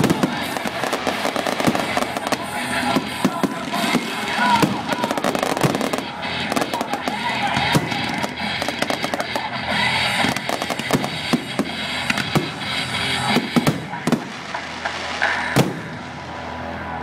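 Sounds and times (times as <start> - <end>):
firework shell bursts and crackling: 0.0 - 16.2
heavy firework bang: 15.6 - 16.0.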